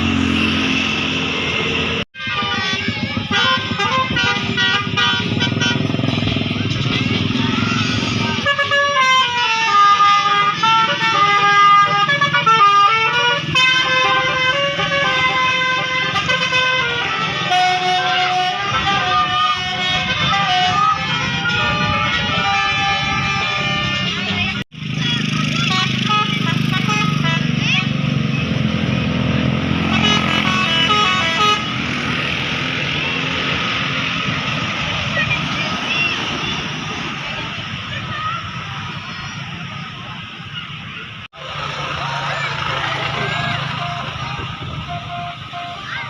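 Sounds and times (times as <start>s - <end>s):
musical bus horn playing a tune: 0.0s - 24.6s, 25.6s - 27.9s, 29.6s - 32.7s, 42.0s - 46.0s
street noise: 0.0s - 46.0s.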